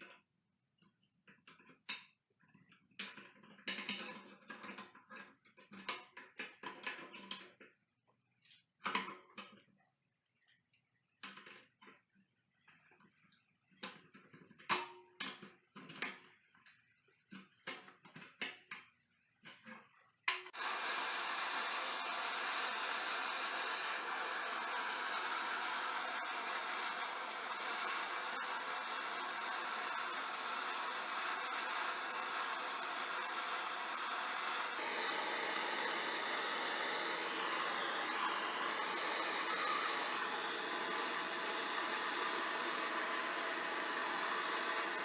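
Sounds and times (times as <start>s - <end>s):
steady hiss: 20.6s - 45.0s.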